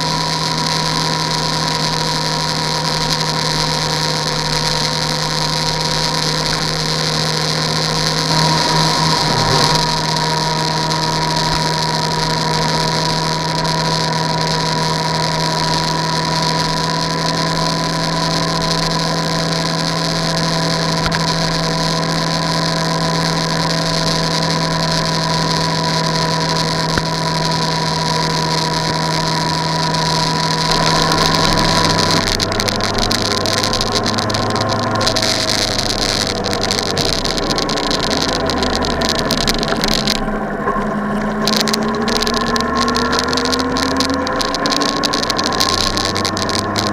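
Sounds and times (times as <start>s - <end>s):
engine droning: 0.0s - 46.9s.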